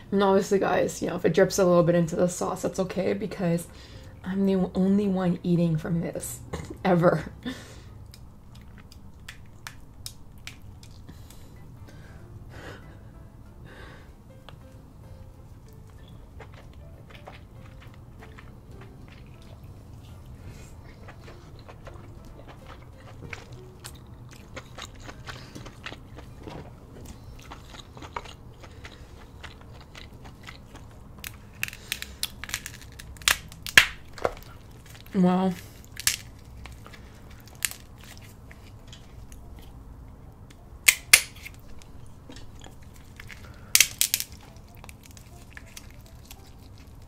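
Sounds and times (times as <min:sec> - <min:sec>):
quiet background music: 0:00.0 - 0:47.0
wet chewing and mouth sounds: 0:07.9 - 0:11.4, 0:15.7 - 0:39.8, 0:40.9 - 0:47.0.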